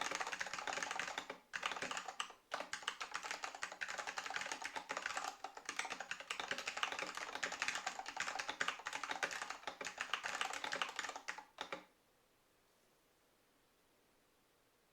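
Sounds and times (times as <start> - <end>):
keyboard typing: 0.0 - 11.9.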